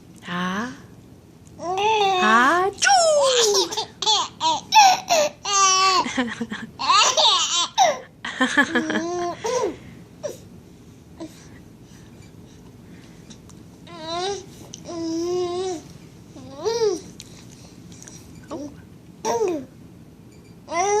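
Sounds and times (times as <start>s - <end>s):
baby laughing: 2.9s - 6.2s, 6.8s - 8.0s.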